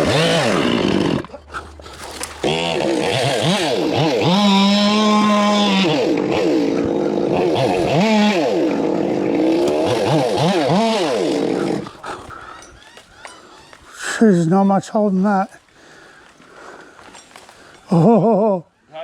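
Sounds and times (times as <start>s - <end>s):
chainsaw engine revving: 0.0s - 12.2s.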